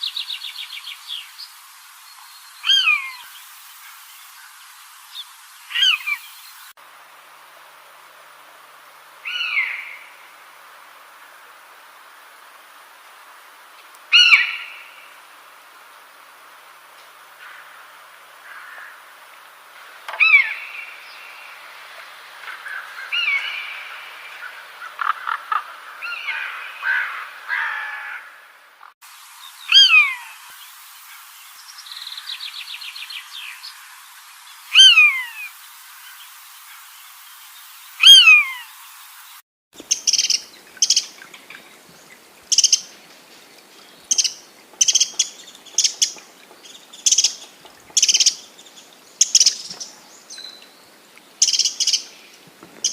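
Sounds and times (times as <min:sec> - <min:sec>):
birds chirping: 0:00.0 - 0:06.8, 0:29.4 - 0:52.9.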